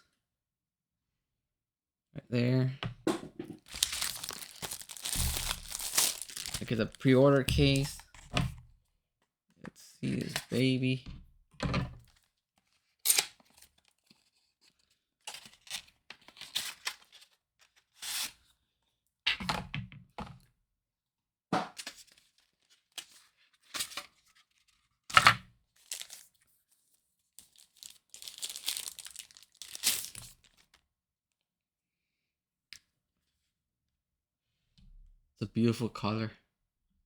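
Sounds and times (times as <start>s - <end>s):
packaging tearing and crinkling: 3.7s - 8.0s, 25.8s - 26.3s, 27.4s - 30.6s.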